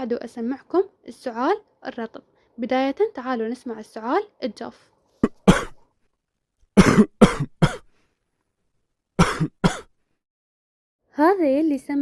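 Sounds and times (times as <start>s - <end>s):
person coughing dry cough: 5.2s - 5.8s, 6.8s - 7.9s, 9.2s - 10.0s.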